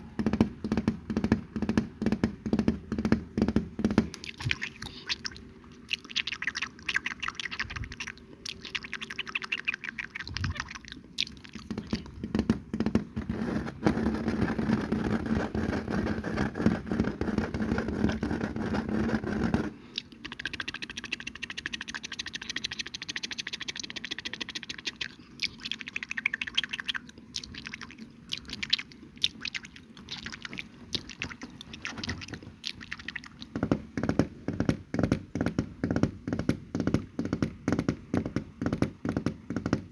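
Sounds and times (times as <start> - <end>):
wet mouth clicks: 4.1 - 12.2, 19.9 - 33.5.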